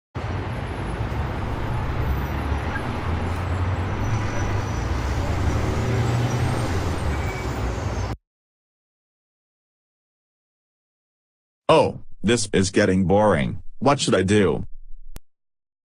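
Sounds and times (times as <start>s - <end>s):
bus engine rumble: 0.2s - 8.2s
road noise: 0.2s - 8.2s.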